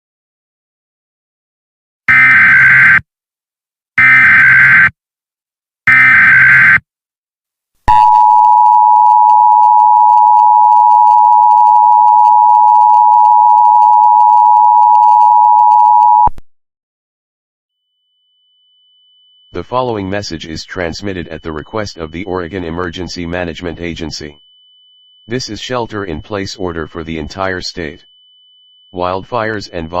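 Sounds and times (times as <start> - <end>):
two-tone alert signal: 7.9 - 16.3.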